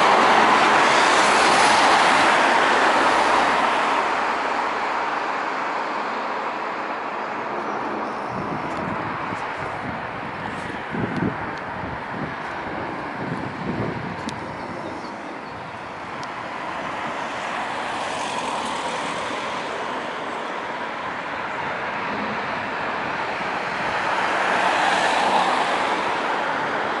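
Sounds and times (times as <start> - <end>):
road traffic: 0.0 - 27.0.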